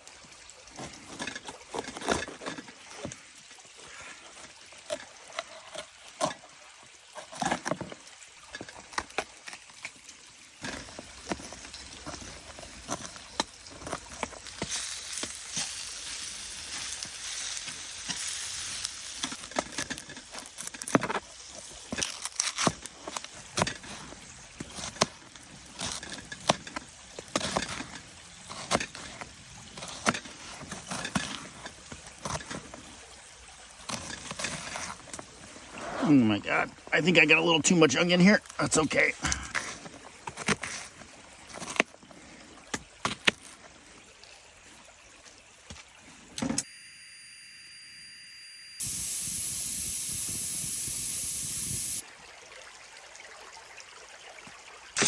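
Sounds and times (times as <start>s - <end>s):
onions sizzling: 10.6s - 24.1s, 48.8s - 52.0s.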